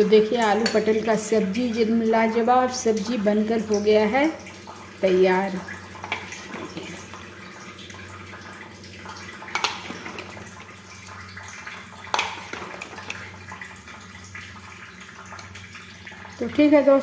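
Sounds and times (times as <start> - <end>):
kitchen clatters: 6.0 - 7.0, 9.4 - 10.7, 12.1 - 13.4.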